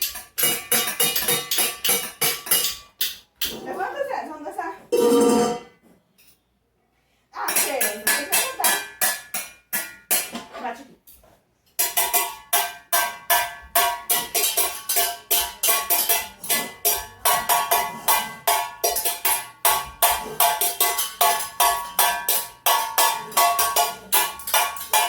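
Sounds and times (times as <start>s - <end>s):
metal spoons clacking rhythmically: 0.0s - 3.8s, 7.4s - 10.3s, 11.8s - 25.0s.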